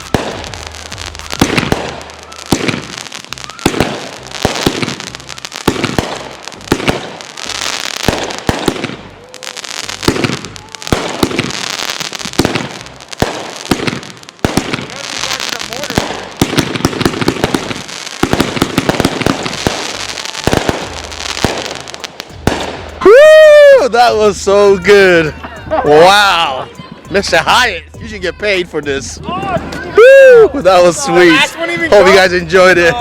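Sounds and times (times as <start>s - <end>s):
fireworks bangs: 0.0s - 23.4s
fireworks whistling: 0.0s - 25.3s
fireworks crackling and hissing: 0.0s - 33.0s.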